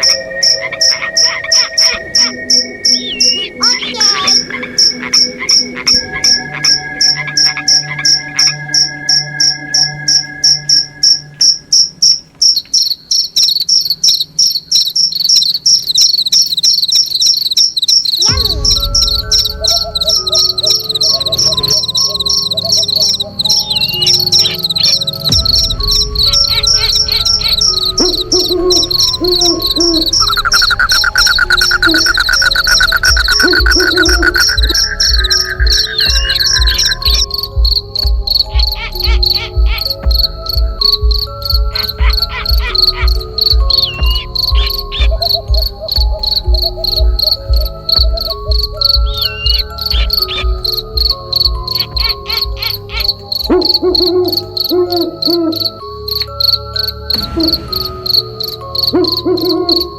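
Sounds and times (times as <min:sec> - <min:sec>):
steady lower tones: 0:00.0 - 0:11.8, 0:18.2 - 0:59.9
high insect chirping: 0:00.0 - 0:59.9
deep low rumble: 0:18.2 - 0:52.2.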